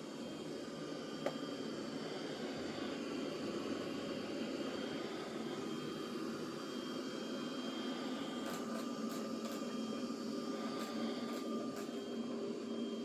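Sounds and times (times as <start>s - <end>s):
faint high whine: 0.0s - 13.0s.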